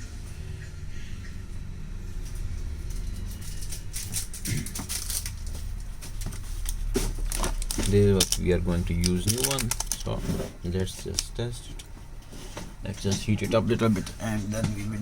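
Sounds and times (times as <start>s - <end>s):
steady low hum: 0.0s - 15.0s
small tools clicking and tapping: 2.8s - 10.1s.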